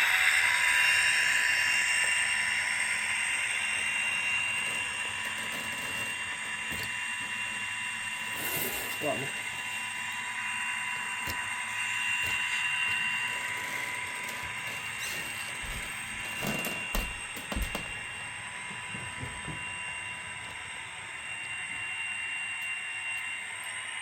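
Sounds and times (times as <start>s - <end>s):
model train electric whine: 0.0s - 24.0s.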